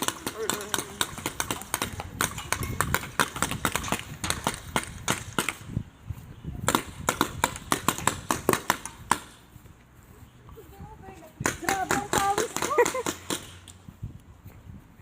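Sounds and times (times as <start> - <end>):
airsoft guns firing sharp pops: 0.0 - 5.7, 6.7 - 9.4, 11.4 - 13.8.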